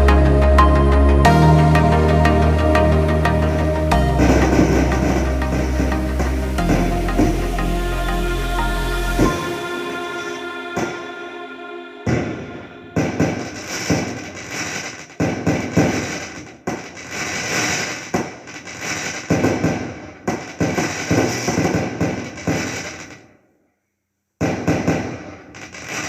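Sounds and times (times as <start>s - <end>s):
fireworks bangs and crackling: 13.0s - 23.2s, 24.4s - 26.0s.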